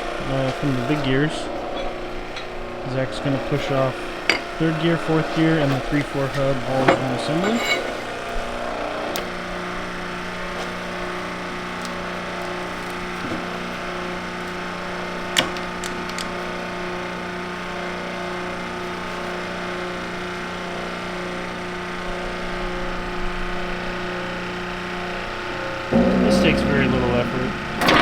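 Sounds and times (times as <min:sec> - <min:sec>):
hydraulic pump humming: 0:02.9 - 0:08.4, 0:25.9 - 0:28.0
sharp metallic click: 0:26.0 - 0:28.0.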